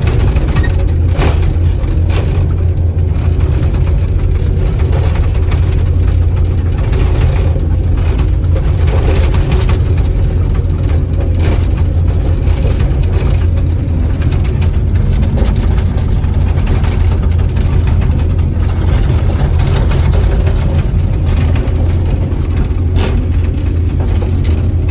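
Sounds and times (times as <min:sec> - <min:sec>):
diesel machinery engine drone: 0:00.0 - 0:24.9.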